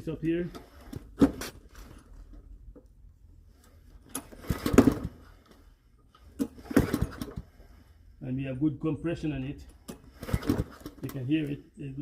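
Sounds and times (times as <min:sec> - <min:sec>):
lawnmower pull-start chuffing: 0:04.1 - 0:05.5, 0:06.2 - 0:07.6, 0:09.9 - 0:11.2.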